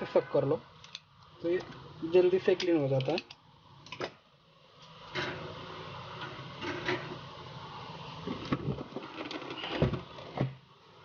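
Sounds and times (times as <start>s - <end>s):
desoldering pump snapping: 2.6s - 4.2s.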